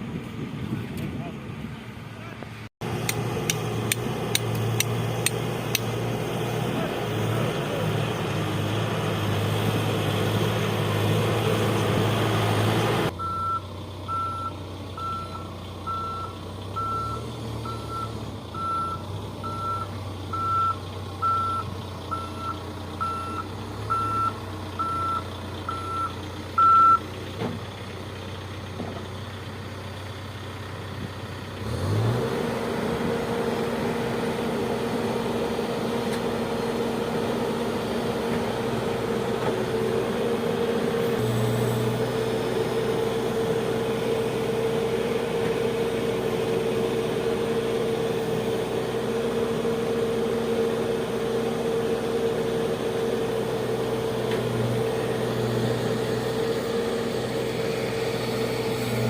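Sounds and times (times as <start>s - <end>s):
heavy machine engine running: 2.8s - 59.0s
reversing alarm beeping: 13.2s - 27.0s.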